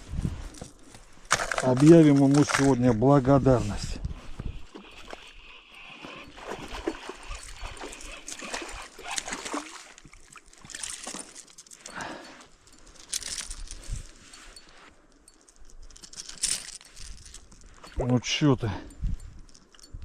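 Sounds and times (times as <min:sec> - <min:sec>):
water splashing and sloshing: 0:04.3 - 0:13.5.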